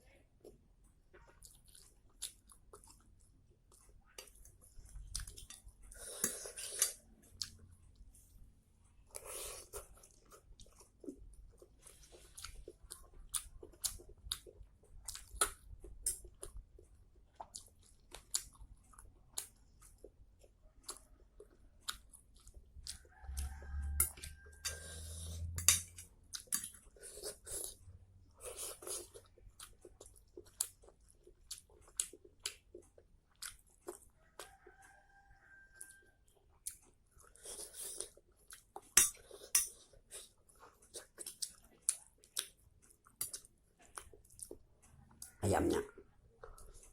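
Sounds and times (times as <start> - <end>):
wet chewing of noodles: 0.4 - 46.9.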